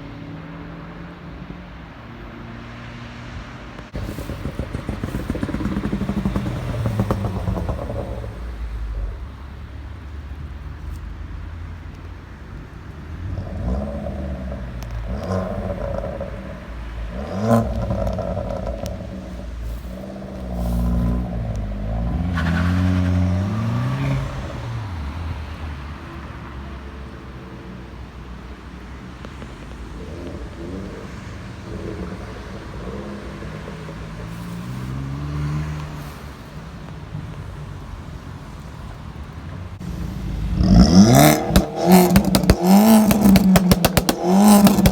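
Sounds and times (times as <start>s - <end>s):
car engine revving: 3.8s - 27.4s, 28.4s - 44.9s
sharp exhaust crack: 4.0s - 9.9s, 13.3s - 24.6s, 39.8s - 44.9s.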